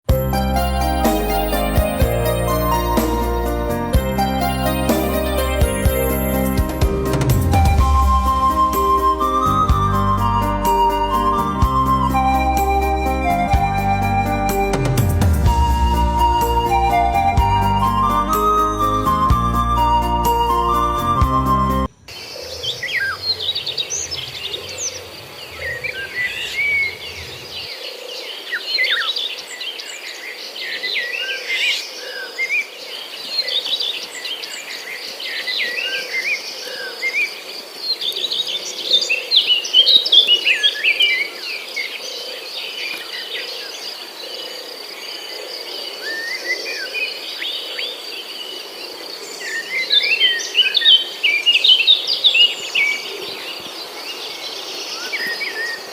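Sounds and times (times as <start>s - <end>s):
songbirds chirping and singing: 15.5s - 55.9s
insects droning: 21.9s - 30.6s, 31.3s - 55.9s.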